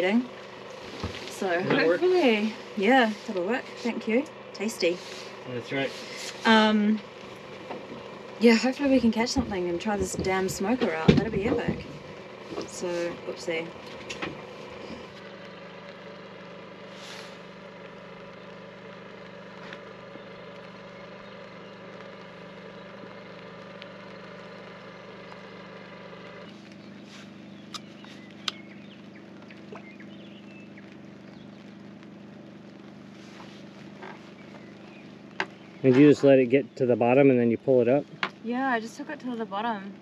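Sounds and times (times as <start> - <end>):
boat engine running: 0.0 - 40.0
sharp clicks: 27.6 - 32.1.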